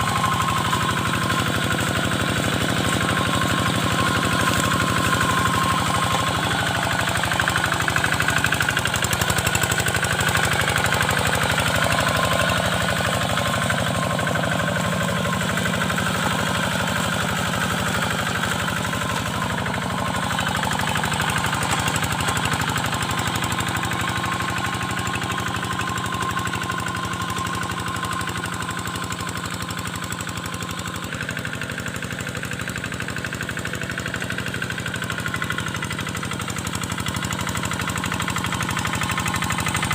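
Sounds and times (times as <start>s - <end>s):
diesel engine chugging: 0.0s - 39.9s.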